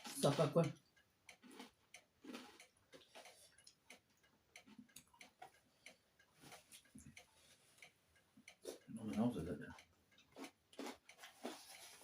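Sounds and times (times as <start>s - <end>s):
chewing crunchy food: 1.3s - 5.6s, 10.1s - 12.0s.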